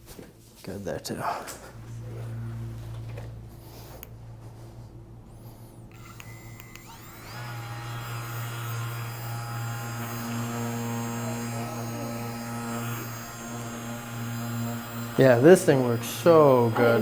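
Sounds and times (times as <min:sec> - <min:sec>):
vibration device motor buzzing: 0:05.4 - 0:17.0.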